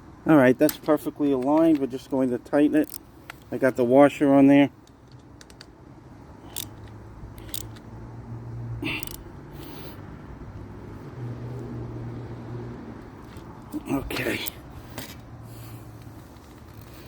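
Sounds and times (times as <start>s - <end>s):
wrench clicking on metal: 2.8s - 3.4s, 6.4s - 7.9s, 8.8s - 9.3s.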